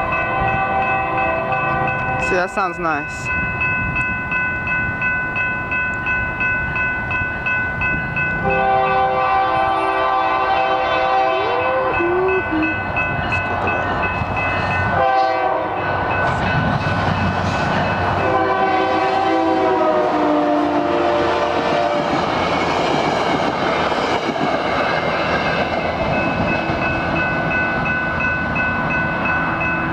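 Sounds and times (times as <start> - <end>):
crossing bell ringing: 0.0 - 29.9
rumble of passing train: 0.0 - 29.9
locomotive air horn: 8.4 - 12.4, 14.9 - 15.8, 18.2 - 22.1.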